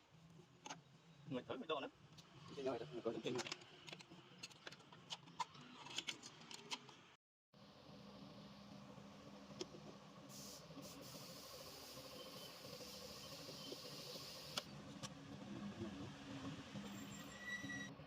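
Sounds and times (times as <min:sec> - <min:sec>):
hiss of spraying gas: 0:10.3 - 0:14.7.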